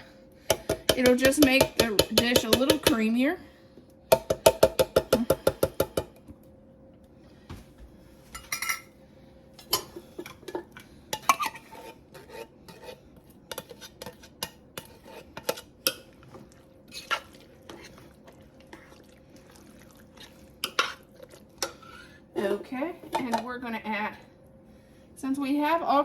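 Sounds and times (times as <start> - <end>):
spoon scraping cookware: 11.2 - 16.1.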